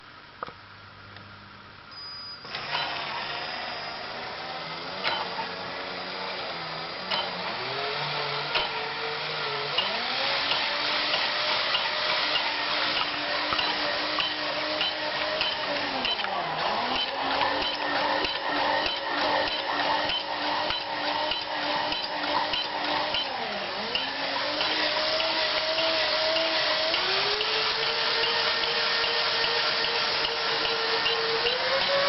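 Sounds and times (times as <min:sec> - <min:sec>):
small electric motor running: 0:02.5 - 0:32.0
regular clicks: 0:05.0 - 0:05.4, 0:07.1 - 0:07.6, 0:09.7 - 0:32.0.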